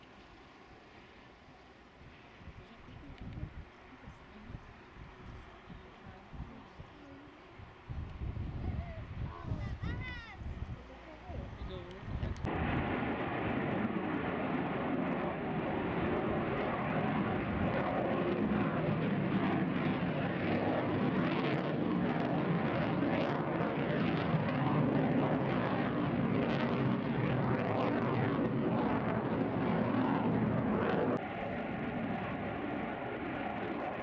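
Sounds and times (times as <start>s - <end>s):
aircraft engine rushing: 0.0s - 34.0s.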